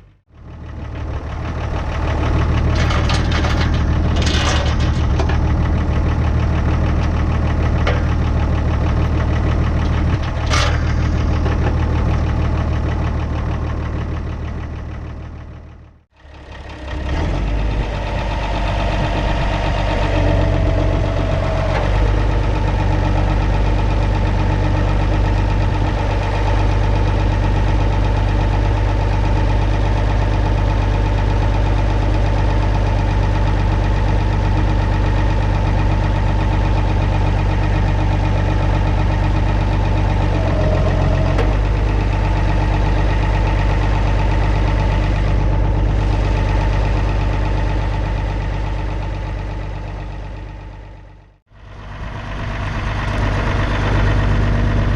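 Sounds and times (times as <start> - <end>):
diesel engine idling: 0.0 - 54.9
sharp metal clank: 10.4 - 11.8.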